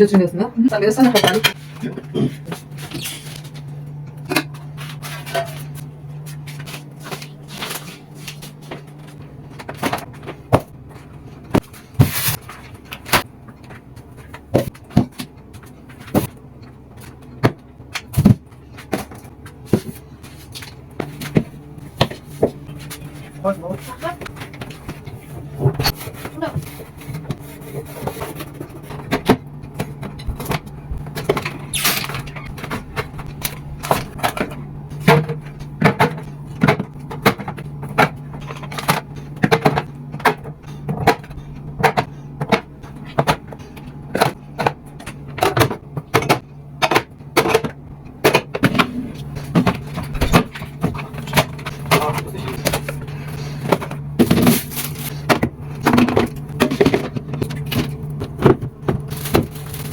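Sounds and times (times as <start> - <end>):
kitchen items knocking and clattering: 0.0 - 59.9
steady low hum: 0.0 - 59.9.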